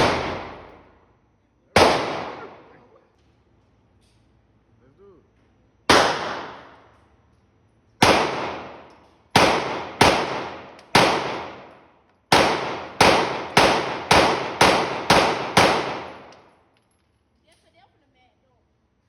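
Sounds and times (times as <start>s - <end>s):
pistol shots echoing: 0.0s - 0.9s, 1.8s - 2.9s, 5.9s - 7.0s, 8.0s - 16.5s.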